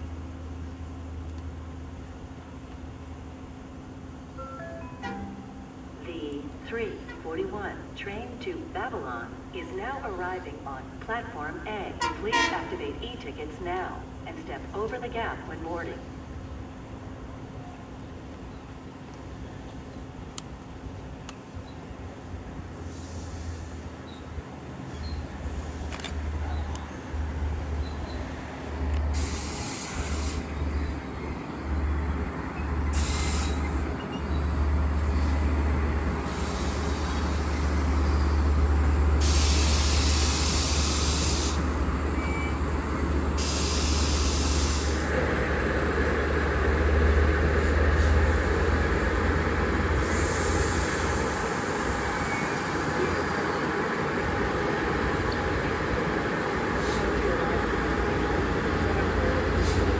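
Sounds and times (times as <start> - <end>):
train low rumble: 0.0 - 59.9
air brake hisses: 22.8 - 23.9, 29.1 - 30.7, 32.9 - 33.8, 36.0 - 38.6, 39.2 - 42.5, 43.1 - 45.2, 50.0 - 53.1.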